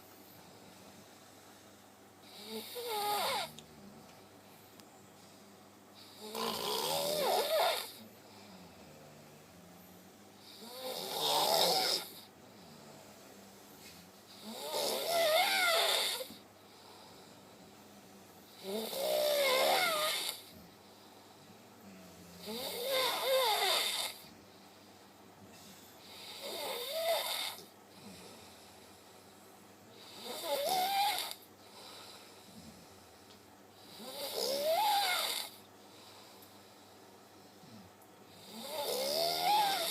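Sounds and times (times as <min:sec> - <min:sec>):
person snoring: 0:02.2 - 0:03.8, 0:06.0 - 0:09.7, 0:10.4 - 0:13.2, 0:14.3 - 0:16.4, 0:18.5 - 0:20.5, 0:22.2 - 0:24.3, 0:26.1 - 0:28.6, 0:30.0 - 0:32.8, 0:33.9 - 0:35.6, 0:37.7 - 0:39.9.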